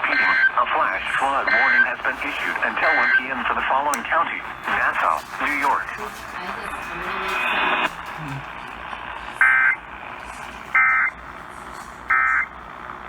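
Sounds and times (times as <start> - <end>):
radio hiss: 0.0 - 13.0
digital data tone squawks: 1.2 - 2.0, 9.4 - 9.8, 10.7 - 11.2, 12.1 - 12.5.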